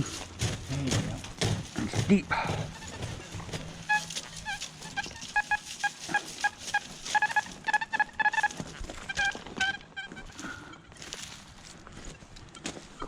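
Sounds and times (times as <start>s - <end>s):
digging knocks and scrapes: 0.0s - 9.8s
metal detector beeping: 2.4s - 11.0s.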